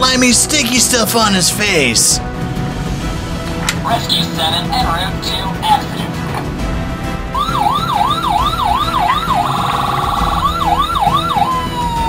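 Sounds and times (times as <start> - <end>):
electronic siren whooping and wailing: 7.4 - 12.0.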